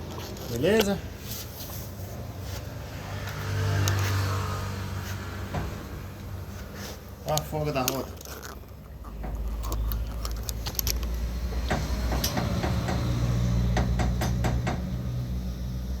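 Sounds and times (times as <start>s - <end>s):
car wheel knocking and clicking: 8.2s - 15.0s.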